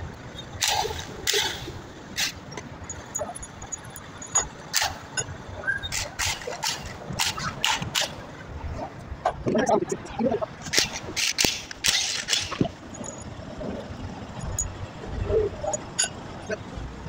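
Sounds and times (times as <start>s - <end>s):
metal tools clinking and knocking: 2.8s - 5.3s, 10.7s - 13.3s, 14.4s - 14.8s, 15.6s - 16.2s.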